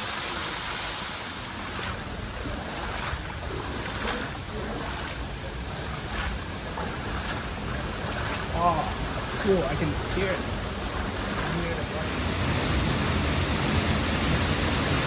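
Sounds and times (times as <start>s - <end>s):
steady rushing noise: 0.6s - 15.0s
wind rumbling on microphone: 1.1s - 15.0s
faint footsteps on path: 1.6s - 12.2s.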